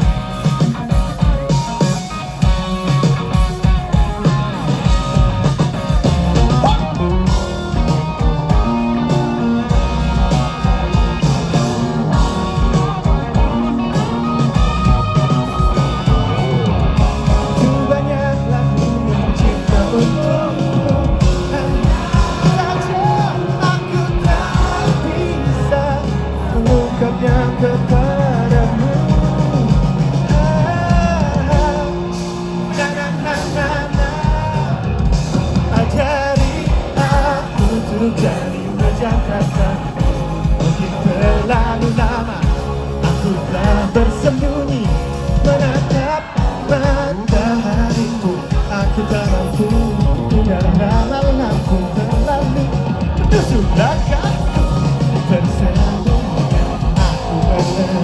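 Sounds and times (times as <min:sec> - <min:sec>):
pop-rock band playing live: 0:00.0 - 0:58.0
person singing lead: 0:06.5 - 0:35.0.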